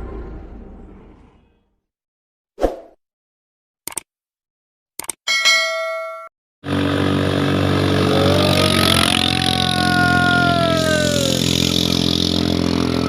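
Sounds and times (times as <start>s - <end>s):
short ringing tone: 5.3s - 6.3s
boat engine running: 6.6s - 13.0s.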